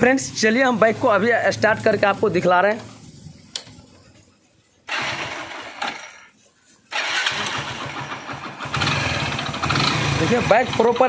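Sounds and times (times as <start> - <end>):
man talking: 0.0 - 2.9, 10.2 - 11.0
motorcycle engine starting: 4.9 - 6.3, 6.9 - 11.0.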